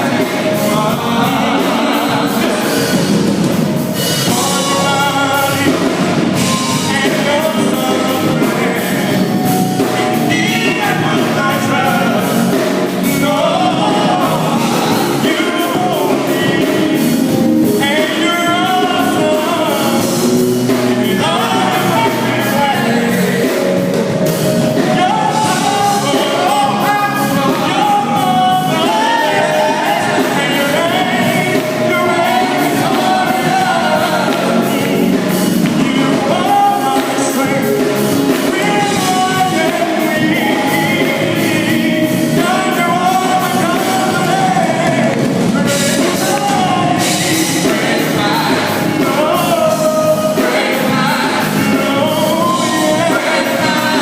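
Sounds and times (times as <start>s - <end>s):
band with drums: 0.0s - 54.0s
man singing gospel song: 0.0s - 54.0s.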